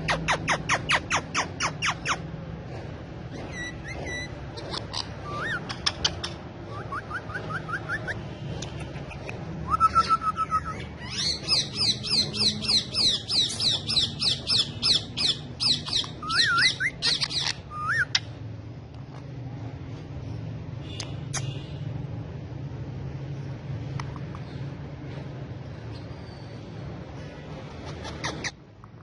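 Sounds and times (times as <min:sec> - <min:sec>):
parakeet squawking: 0:00.0 - 0:02.3, 0:03.3 - 0:18.4, 0:27.8 - 0:28.6.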